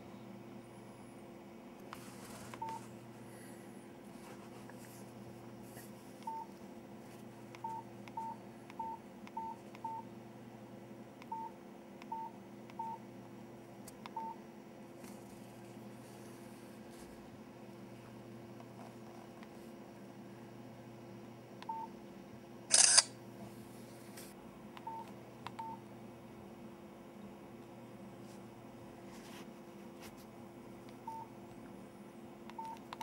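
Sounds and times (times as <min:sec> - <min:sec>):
faint steady hum: 0:00.0 - 0:33.0
phone keypad beeps: 0:02.6 - 0:02.8, 0:06.3 - 0:06.5, 0:07.6 - 0:10.0, 0:11.2 - 0:11.5, 0:12.1 - 0:13.0, 0:14.2 - 0:14.4, 0:21.6 - 0:21.9, 0:24.8 - 0:25.8, 0:31.1 - 0:31.3, 0:32.5 - 0:33.0.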